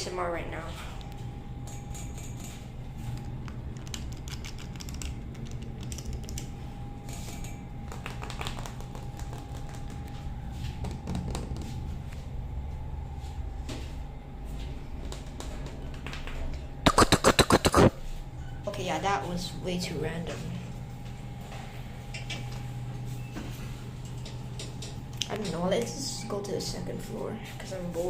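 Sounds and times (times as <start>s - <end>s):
elevator low hum: 0.0s - 28.0s
fingers tapping and clicking: 7.9s - 10.0s.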